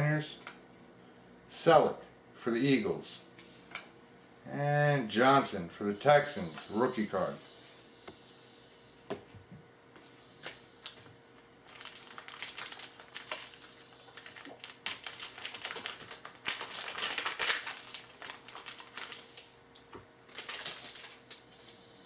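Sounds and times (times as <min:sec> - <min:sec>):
card pack wrapper crinkling: 0:10.4 - 0:21.7.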